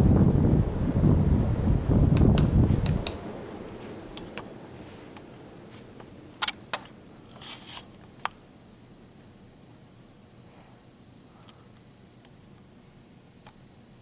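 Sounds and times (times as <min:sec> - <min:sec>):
sharp fan clicks: 0:00.0 - 0:08.4
ceiling fan blades rushing: 0:00.0 - 0:14.0.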